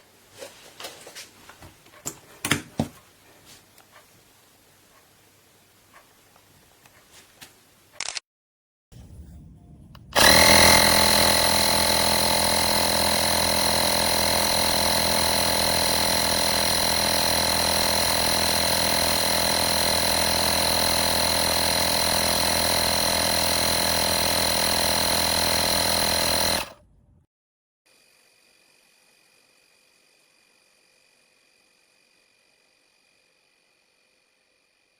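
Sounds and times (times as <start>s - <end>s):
portable air compressor running: 10.1s - 26.8s.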